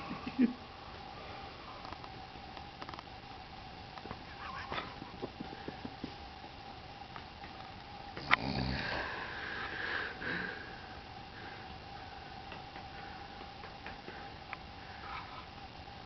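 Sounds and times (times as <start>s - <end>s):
faint steady hum: 0.0s - 16.0s
person snoring: 8.2s - 10.9s.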